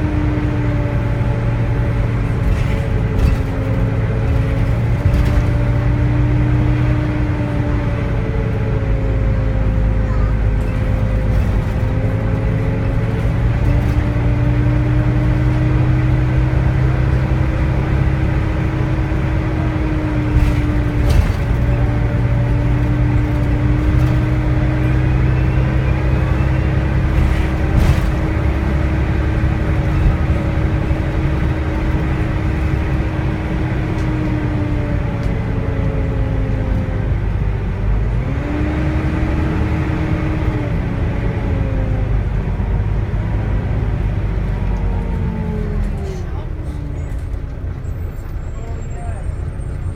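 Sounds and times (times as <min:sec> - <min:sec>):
bus diesel engine whining: 0:00.0 - 0:49.9.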